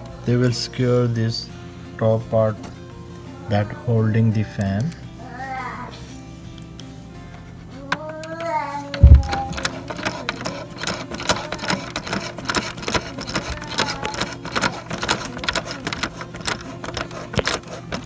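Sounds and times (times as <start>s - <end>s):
screwdriver clicking into plastic: 7.9s - 18.0s.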